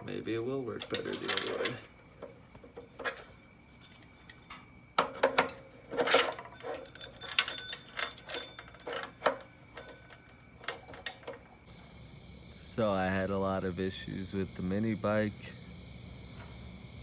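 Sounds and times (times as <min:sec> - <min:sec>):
metal tools clinking and knocking: 0:00.0 - 0:11.6.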